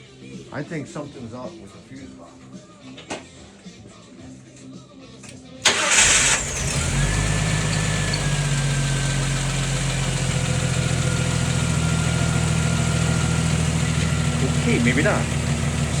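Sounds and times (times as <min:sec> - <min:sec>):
car engine idling: 0:05.6 - 0:16.0.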